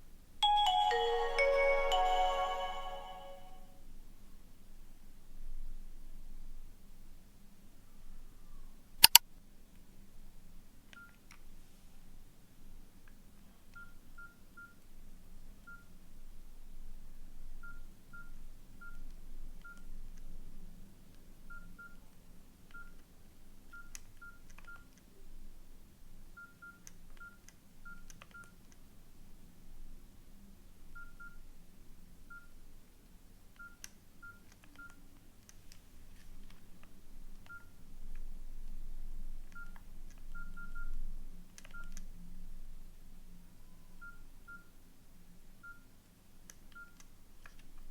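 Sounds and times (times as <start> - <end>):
keypad beeps: 26.4 - 28.6, 33.6 - 35.0, 37.5 - 37.7, 39.6 - 39.8, 41.7 - 42.0.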